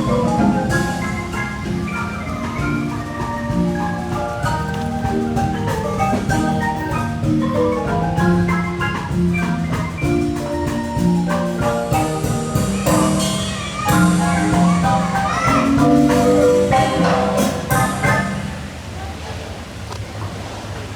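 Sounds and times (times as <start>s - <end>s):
marimba melody with mallet rolls: 0.0s - 19.0s.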